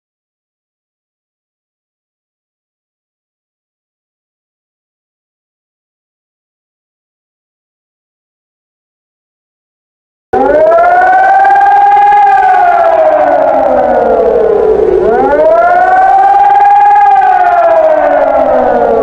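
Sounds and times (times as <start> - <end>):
civil defence siren wailing: 10.4 - 19.0.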